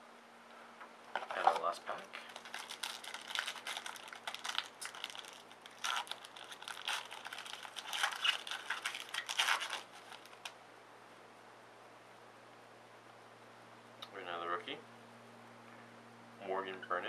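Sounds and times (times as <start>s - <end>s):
wrapper tearing and crinkling: 1.2s - 10.6s.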